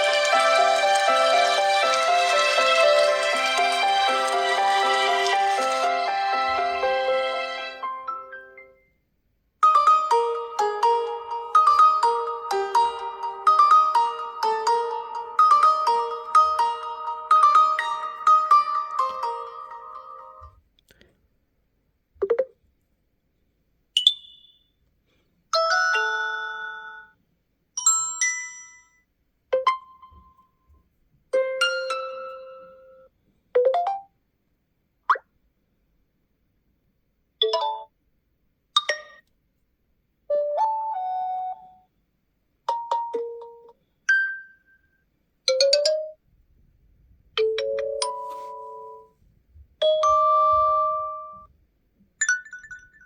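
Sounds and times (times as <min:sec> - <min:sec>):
phone chimes and jingles: 0:49.8 - 0:51.5, 0:52.2 - 0:53.0.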